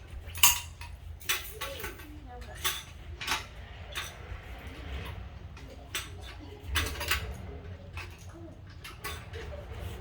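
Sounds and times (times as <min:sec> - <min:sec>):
metallic clinks and knocks: 0:00.0 - 0:04.3.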